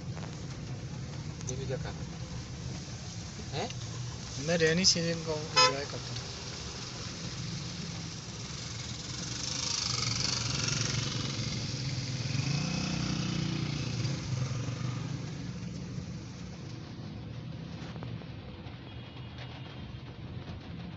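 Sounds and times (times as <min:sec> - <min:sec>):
traffic engine hum: 0:00.0 - 0:20.9
vehicle passing: 0:05.3 - 0:16.8.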